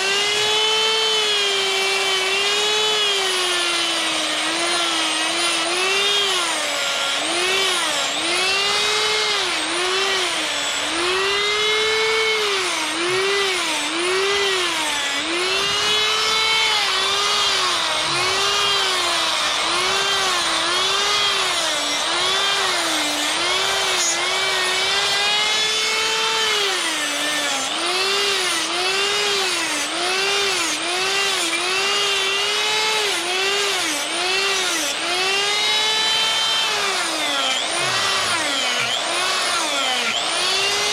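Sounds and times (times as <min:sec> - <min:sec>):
die grinder carving wood: 0:00.0 - 0:40.9.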